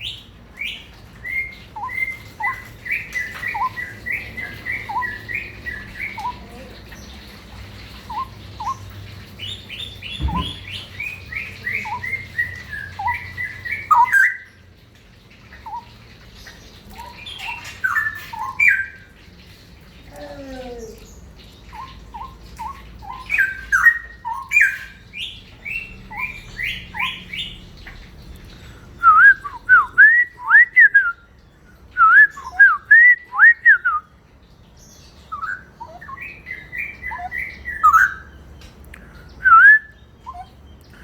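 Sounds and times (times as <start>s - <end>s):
bird whistled song: 0.0s - 6.5s, 8.0s - 14.7s, 17.0s - 19.1s, 21.7s - 27.6s, 29.0s - 31.3s, 31.9s - 34.1s, 35.0s - 38.4s, 39.0s - 40.7s
bird chirps: 0.0s - 14.6s, 34.8s - 41.0s.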